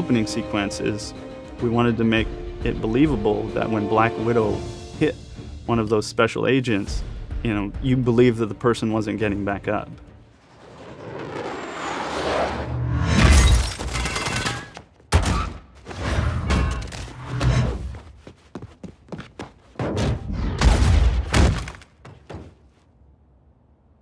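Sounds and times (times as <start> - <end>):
shattering crash: 13.0 - 15.4
heavy punches and body impacts: 19.8 - 22.6.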